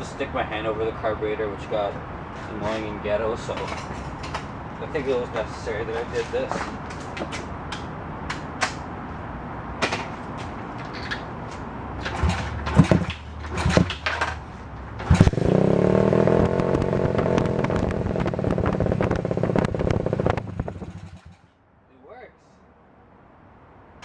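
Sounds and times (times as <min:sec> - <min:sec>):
motorbike engine running: 0:12.0 - 0:14.4, 0:15.0 - 0:21.5
motorbike engine cranking: 0:12.0 - 0:21.5.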